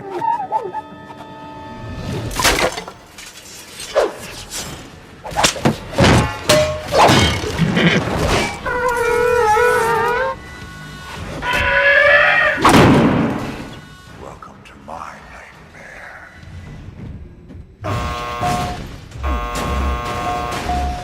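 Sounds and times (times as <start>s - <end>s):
cartoon crash and smash effects: 12.6s - 13.5s.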